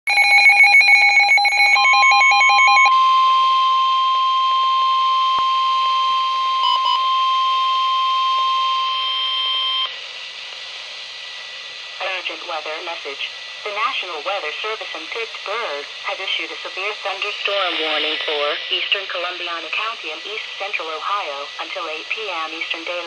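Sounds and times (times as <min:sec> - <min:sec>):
steady warning alarm tone: 0:00.1 - 0:09.9.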